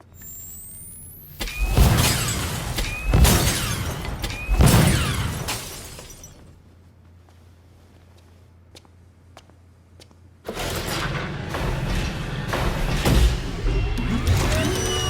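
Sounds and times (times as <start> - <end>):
short rising chirp: 0.0 - 5.2
heavy crashing impacts: 1.5 - 6.5.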